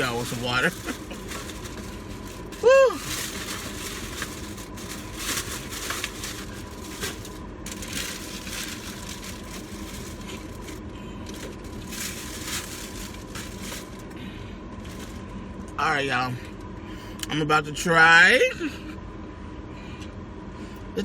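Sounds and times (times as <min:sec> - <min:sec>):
crinkling and crunching while eating: 0:00.0 - 0:14.2, 0:14.8 - 0:15.8
steady low hum: 0:00.0 - 0:21.0.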